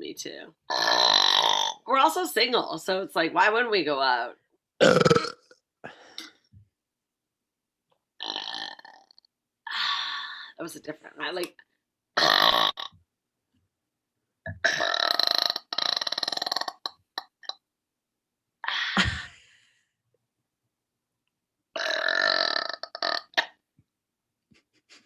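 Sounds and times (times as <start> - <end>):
woman burping: 4.8 - 5.6, 12.2 - 12.9, 14.5 - 17.6, 21.8 - 23.6.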